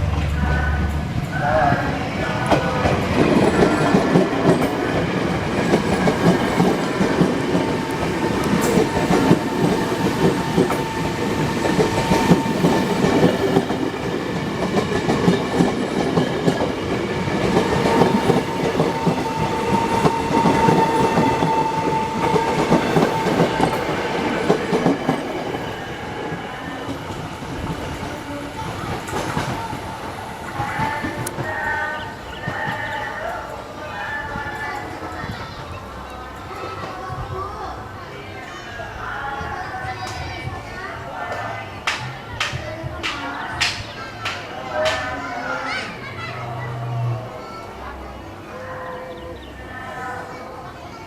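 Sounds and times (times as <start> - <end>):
train wheels clattering on rails: 2.2 - 33.0, 41.3 - 45.8.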